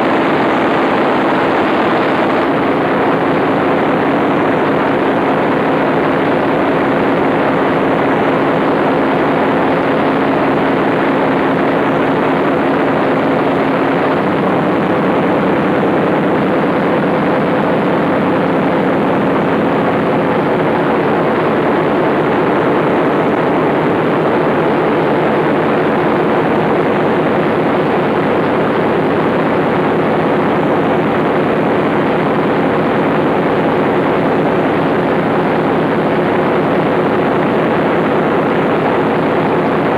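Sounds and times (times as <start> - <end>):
large diesel engine running: 0.0 - 29.6.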